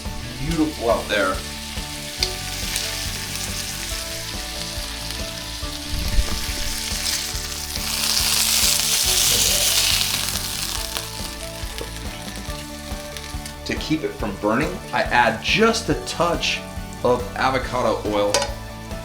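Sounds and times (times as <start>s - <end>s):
fish sizzling in a pan: 0.0s - 19.0s.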